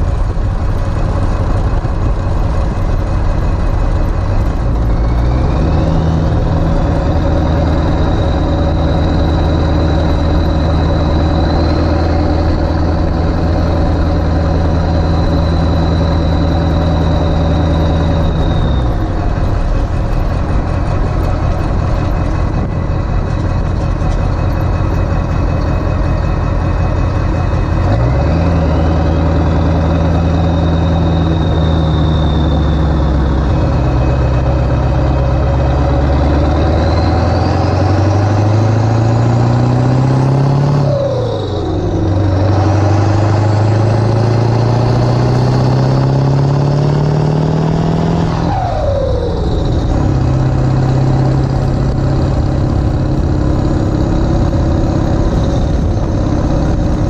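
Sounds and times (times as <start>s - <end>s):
diesel engine pulling under load: 0.0s - 57.0s
turbo whistle: 4.8s - 13.0s, 14.6s - 19.6s.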